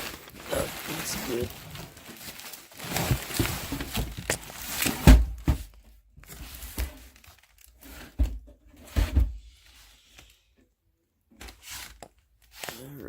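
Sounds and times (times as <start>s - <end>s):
packaging tearing and crumpling: 0.0s - 5.1s, 6.5s - 7.7s, 11.6s - 13.0s.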